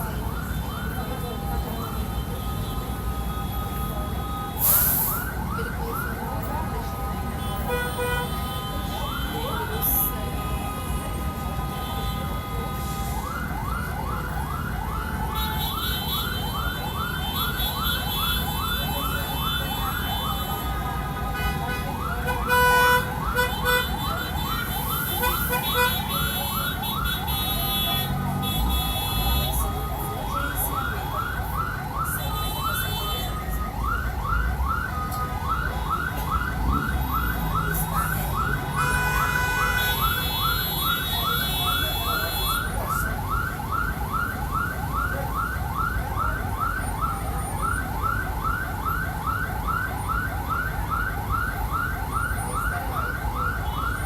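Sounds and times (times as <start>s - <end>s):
bus engine rumble: 0.0s - 40.3s.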